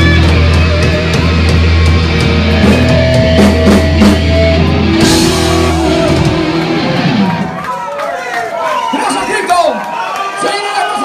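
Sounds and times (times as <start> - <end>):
heavy metal band playing live: 0.0 - 7.7.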